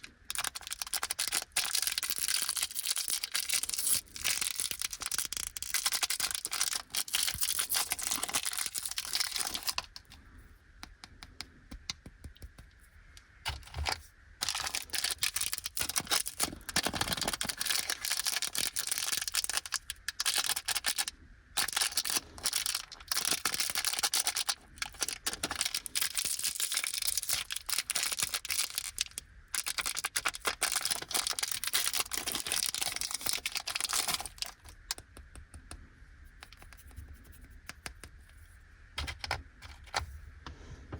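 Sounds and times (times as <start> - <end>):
plastic wrapper crinkling: 0.0 - 10.2, 13.5 - 35.1.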